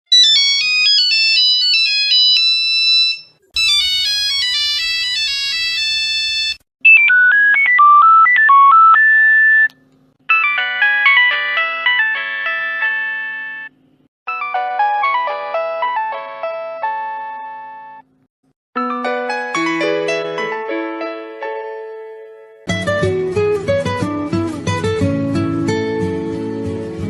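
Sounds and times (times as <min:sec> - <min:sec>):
phone ringtone melodies: 0:00.1 - 0:09.7, 0:10.3 - 0:18.0, 0:18.8 - 0:21.3.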